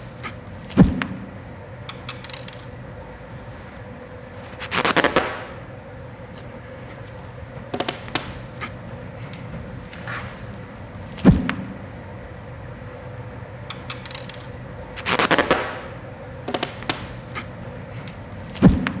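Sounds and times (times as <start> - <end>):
sharp clicks and taps: 1.9 - 2.8, 7.8 - 9.4, 13.7 - 15.7
rustling burst: 3.7 - 6.6, 14.1 - 16.2
heavy low thump: 11.2 - 11.9, 18.6 - 19.0.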